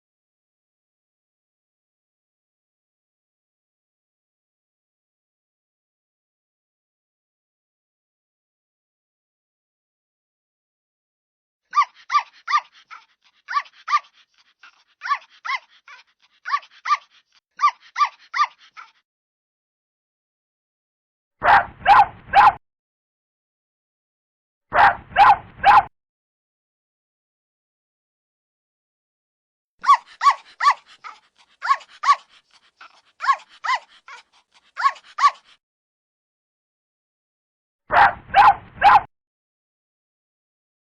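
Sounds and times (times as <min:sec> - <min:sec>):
puppy yapping: 0:11.7 - 0:19.0, 0:21.4 - 0:22.6, 0:24.8 - 0:25.9, 0:29.8 - 0:35.6, 0:37.9 - 0:39.1.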